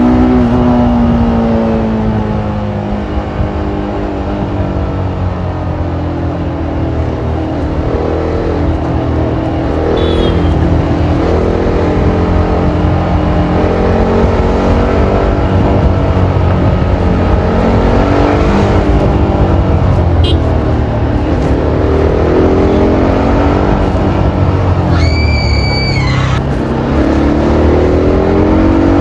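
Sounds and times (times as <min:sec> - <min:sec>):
motorcycle engine revving: 0:00.0 - 0:29.0.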